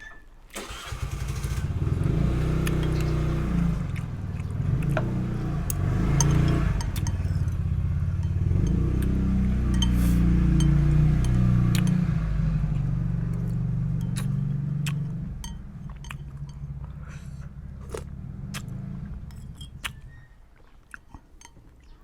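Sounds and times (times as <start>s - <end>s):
motor engine humming: 0.8s - 20.3s
light clinks: 2.6s - 12.2s, 12.8s - 17.5s, 19.1s - 20.4s.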